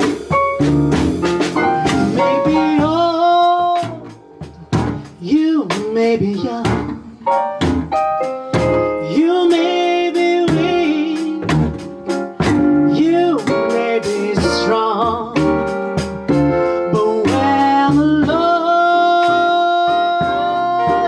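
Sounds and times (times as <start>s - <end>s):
piano chords: 0.0s - 21.0s
person singing: 2.0s - 4.2s, 5.1s - 7.3s, 8.9s - 12.2s, 12.8s - 15.8s, 16.6s - 21.0s.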